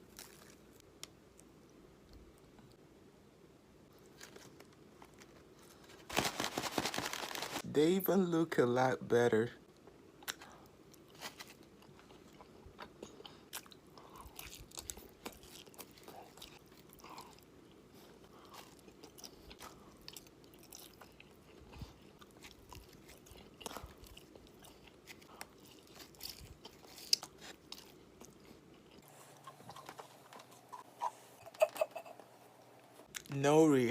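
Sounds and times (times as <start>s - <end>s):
person chewing food: 9.8s - 32.1s.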